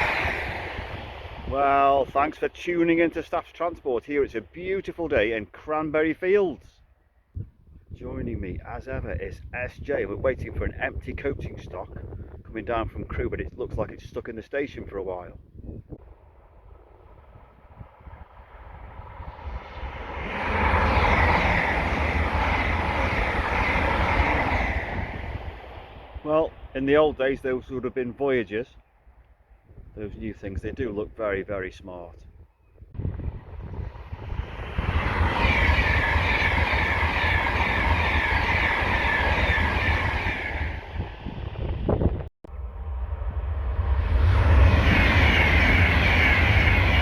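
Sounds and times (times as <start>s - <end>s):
train passing at speed: 0.0s - 5.6s, 15.9s - 28.7s, 33.0s - 47.0s.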